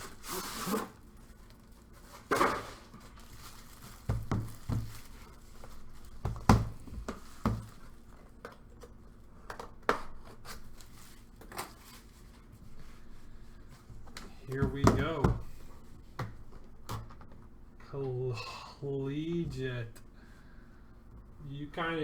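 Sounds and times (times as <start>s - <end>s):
taps and bumps: 14.1s - 15.6s.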